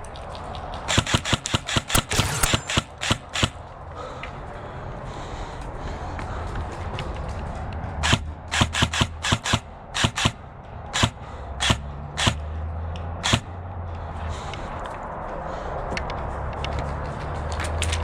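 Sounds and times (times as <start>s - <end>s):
airsoft gun shots: 0.9s - 3.6s, 8.0s - 10.4s, 11.0s - 12.5s, 13.2s - 13.5s.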